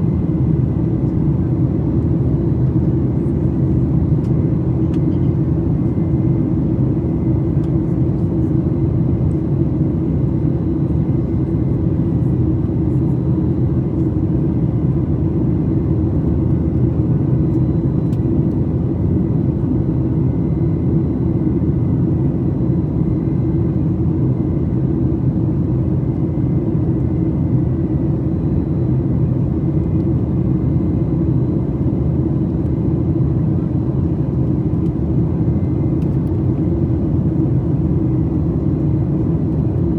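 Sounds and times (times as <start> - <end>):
jet engines droning in cabin: 0.0 - 39.9.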